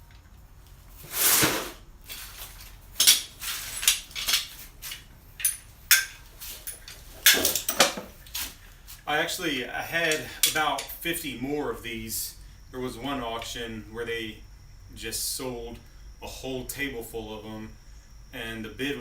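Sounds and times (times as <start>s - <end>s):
metal clamps clanking: 3.0s - 4.6s, 5.4s - 8.2s.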